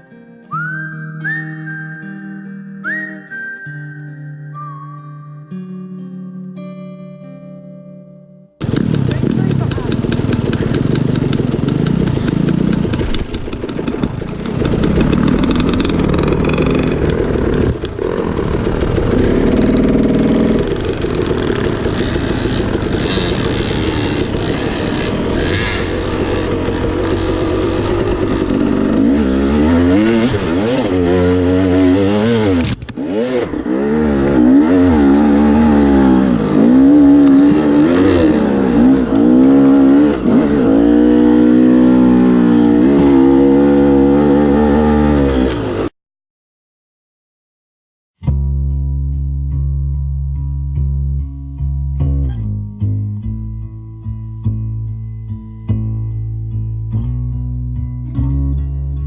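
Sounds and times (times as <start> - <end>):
dirt bike engine revving: 8.6 - 45.9.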